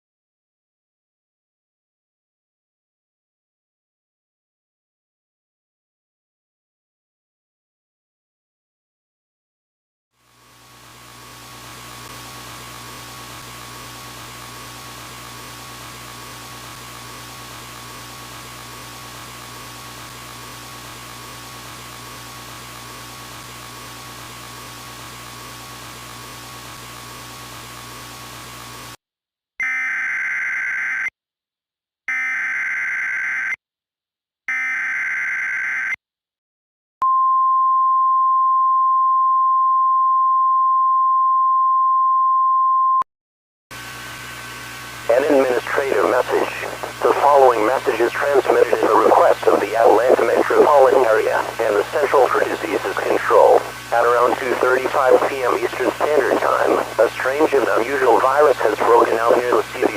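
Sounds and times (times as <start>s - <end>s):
steady hum and hiss: 43.8s - 59.9s
harsh electronic data bursts: 45.1s - 59.9s.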